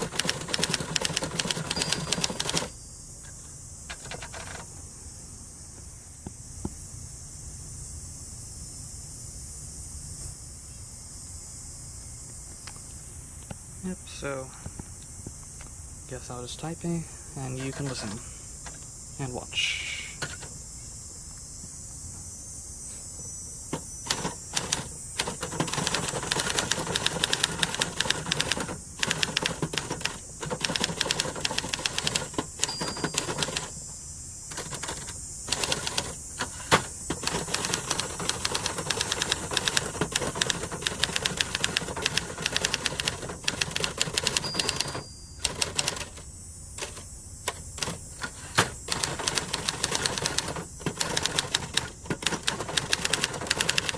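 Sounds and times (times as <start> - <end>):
manual typewriter key strikes: 0.0 - 2.7, 3.9 - 4.7, 17.5 - 18.2, 20.2 - 20.5, 23.8 - 33.9, 34.5 - 53.9.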